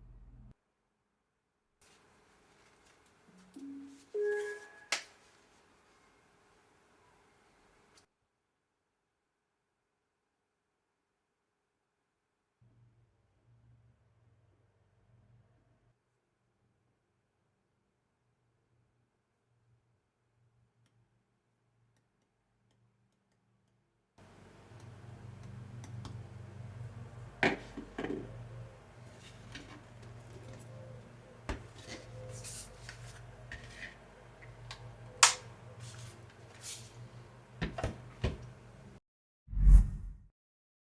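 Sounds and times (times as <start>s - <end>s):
low steady hum: 0.0s - 0.5s.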